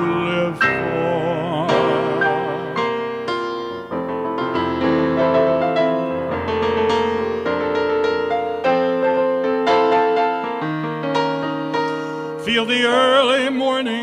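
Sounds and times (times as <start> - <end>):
piano ballad: 0.0 - 14.0.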